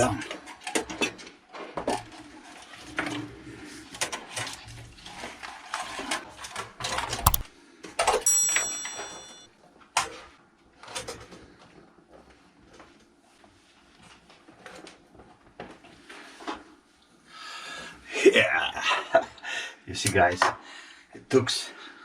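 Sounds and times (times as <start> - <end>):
clicks and knocks of handled parts: 7.0 - 7.5.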